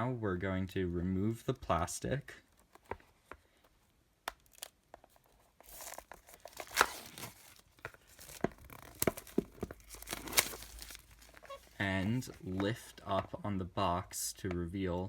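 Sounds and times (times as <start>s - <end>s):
plastic wrap crinkling: 4.4s - 12.9s.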